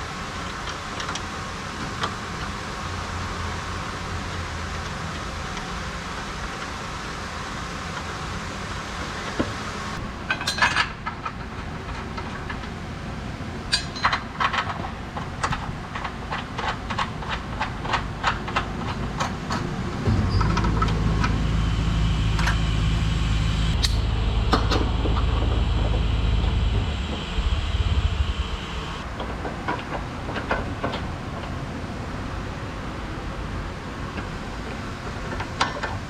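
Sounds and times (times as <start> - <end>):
low motor hum: 19.6 - 29.1.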